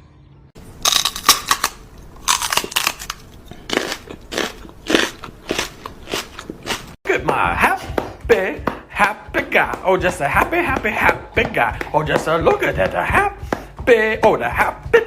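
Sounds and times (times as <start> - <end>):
loud crunching: 0.7 - 7.0.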